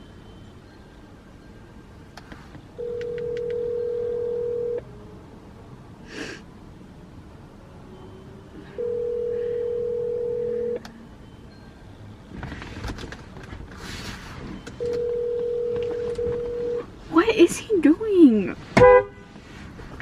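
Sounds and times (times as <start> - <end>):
phone ringback tone: 2.8 - 4.8, 8.6 - 10.8, 14.6 - 16.9
brief rustle: 12.4 - 15.0.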